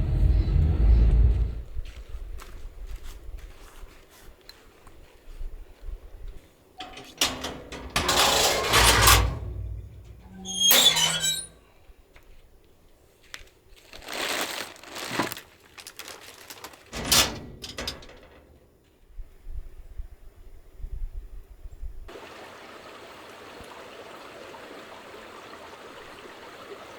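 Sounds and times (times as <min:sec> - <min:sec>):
rustling and handling noise: 0:13.3 - 0:18.6.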